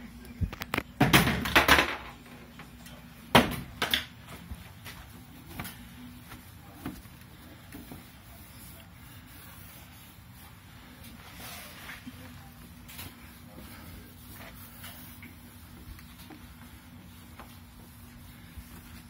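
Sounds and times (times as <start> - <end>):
scuffs and rubs from wiping: 4.5 - 19.0.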